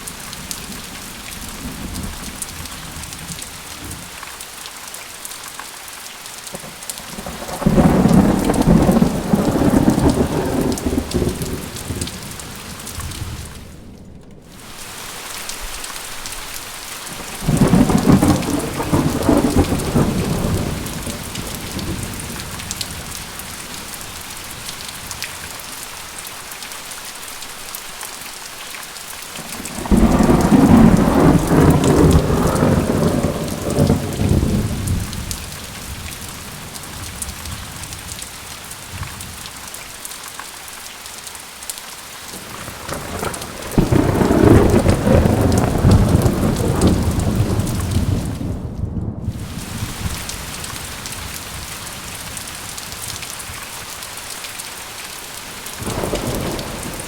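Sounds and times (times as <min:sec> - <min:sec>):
steady rain falling: 0:00.0 - 0:57.0
thunder rumbling: 0:06.6 - 0:14.5, 0:17.1 - 0:25.1, 0:29.4 - 0:38.2, 0:42.3 - 0:53.6, 0:55.8 - 0:57.0.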